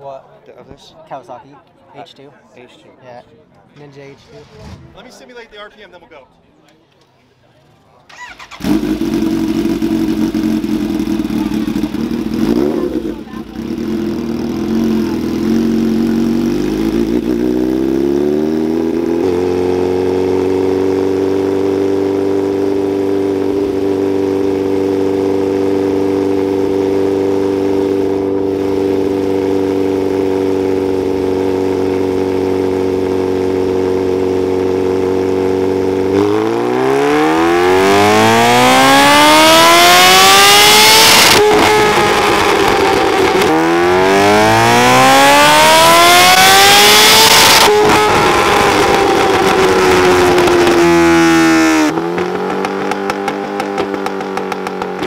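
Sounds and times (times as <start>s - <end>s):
motorcycle engine revving: 8.1s - 55.0s.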